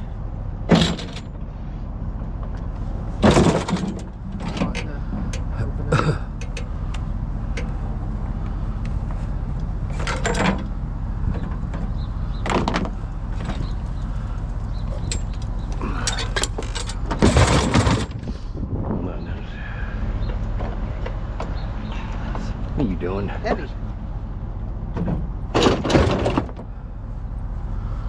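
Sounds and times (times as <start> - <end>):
vehicle engine idling: 0.0 - 28.0
loud clatters and bangs: 0.7 - 1.4, 3.2 - 5.3, 16.2 - 18.4, 24.9 - 26.7.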